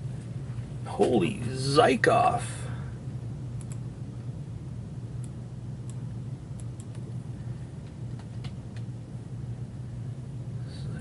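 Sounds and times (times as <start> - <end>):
steady low hum: 0.0 - 11.0
faint computer clicks: 3.6 - 3.9, 6.6 - 7.1.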